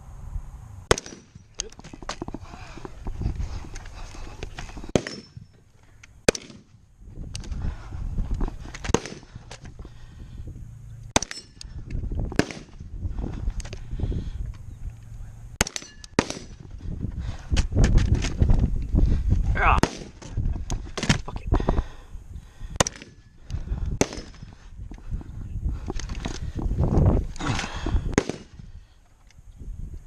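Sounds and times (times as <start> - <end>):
gunshots: 0.9 - 1.4, 4.9 - 5.4, 6.2 - 6.7, 8.9 - 9.3, 12.4 - 12.8, 15.6 - 16.6, 19.7 - 20.2, 24.0 - 24.4, 28.1 - 28.6
rustling and knocking handling noise: 1.7 - 5.6.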